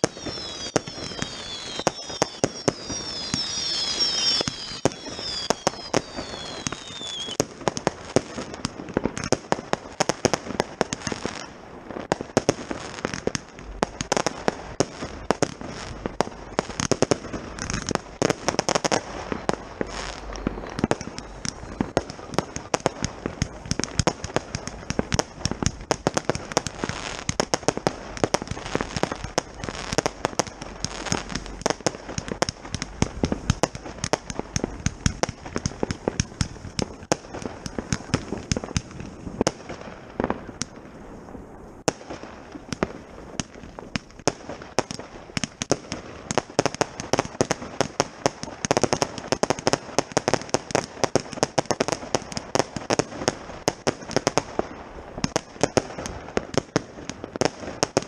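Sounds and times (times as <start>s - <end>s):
fireworks firing with crackle: 0.0s - 58.0s.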